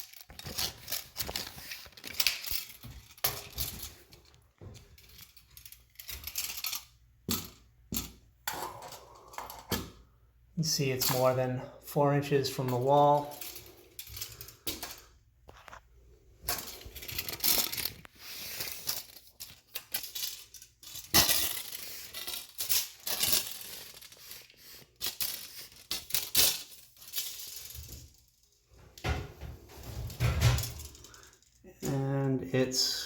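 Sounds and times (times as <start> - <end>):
metal tape measure clicking and rattling: 0.0 - 4.4, 5.0 - 8.1, 16.4 - 28.5.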